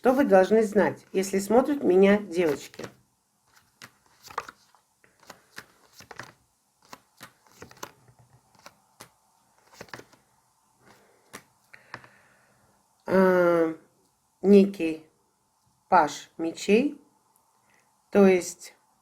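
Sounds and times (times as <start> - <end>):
cards clicking and snapping: 3.5 - 10.2, 10.9 - 12.1.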